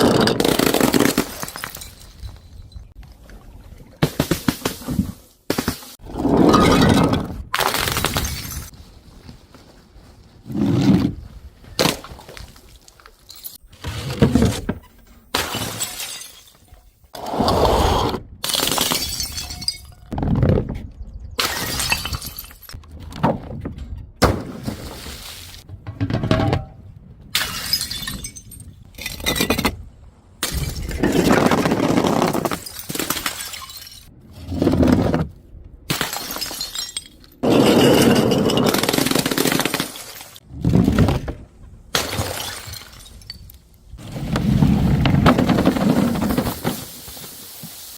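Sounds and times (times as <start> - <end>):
glass bottles smashing: 0.9 - 2.7, 15.4 - 16.8, 18.5 - 20.1, 21.4 - 22.8, 27.4 - 29.7, 32.5 - 34.1, 35.9 - 40.3, 42.0 - 43.5.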